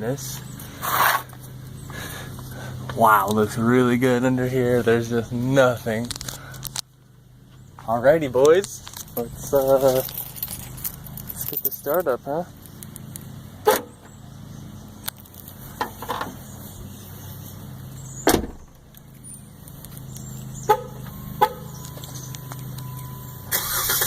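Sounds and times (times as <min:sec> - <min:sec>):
steady low hum: 0:00.0 - 0:11.6
car starter cranking: 0:20.1 - 0:24.0.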